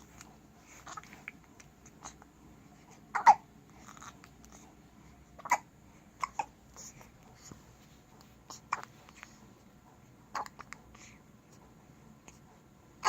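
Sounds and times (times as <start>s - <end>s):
baby hiccuping: 3.1s - 4.1s, 5.4s - 7.0s, 10.3s - 10.8s.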